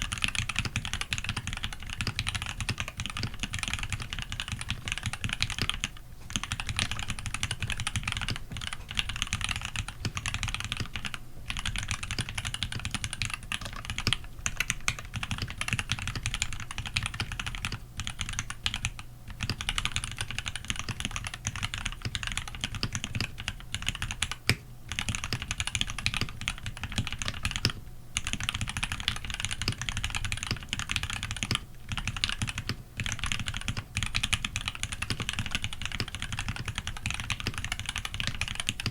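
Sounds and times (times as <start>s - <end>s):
fast mechanical keyboard typing: 0.0s - 38.9s.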